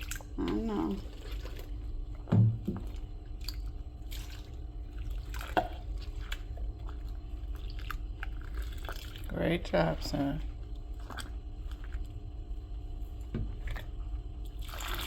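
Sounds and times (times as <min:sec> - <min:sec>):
bathwater dripping and splashing: 0:00.0 - 0:12.2
steady low hum: 0:00.0 - 0:15.0.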